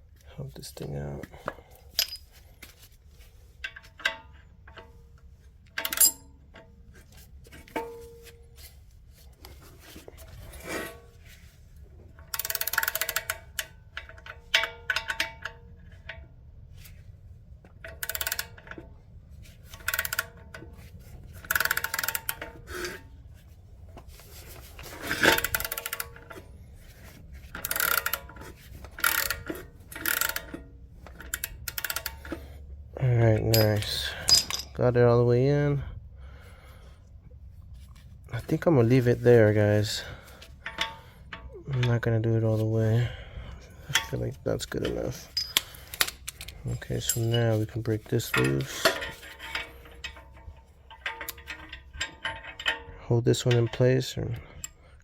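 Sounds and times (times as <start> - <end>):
metallic clinks: 1.8 - 2.3, 33.5 - 34.8, 45.2 - 47.5
socket ratchet clicking: 12.3 - 13.7, 17.8 - 18.6, 27.6 - 28.3, 29.0 - 32.4.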